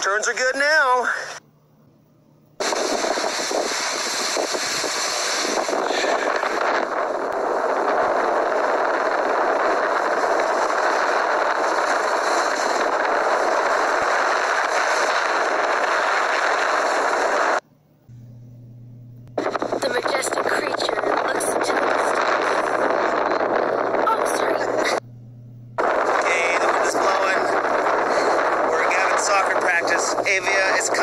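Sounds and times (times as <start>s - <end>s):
skis hissing over snow: 2.7s - 6.3s.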